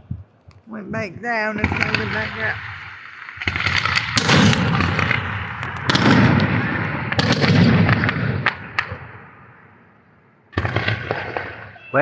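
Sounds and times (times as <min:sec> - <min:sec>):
fireworks crackling: 0:00.7 - 0:09.0
fireworks bangs: 0:00.8 - 0:09.8, 0:10.5 - 0:12.0.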